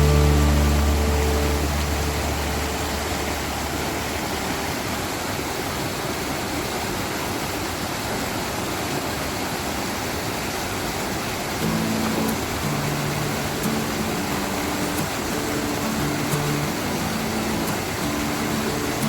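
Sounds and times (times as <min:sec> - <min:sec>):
background music: 0:00.0 - 0:03.8, 0:11.6 - 0:19.0
stream rushing over rocks: 0:00.0 - 0:19.0.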